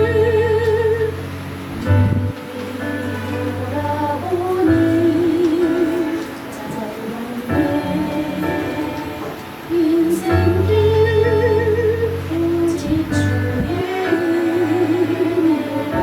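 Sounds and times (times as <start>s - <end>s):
low bass notes: 0.0s - 2.4s, 10.5s - 13.9s
slow melody with vibrato: 0.0s - 16.0s.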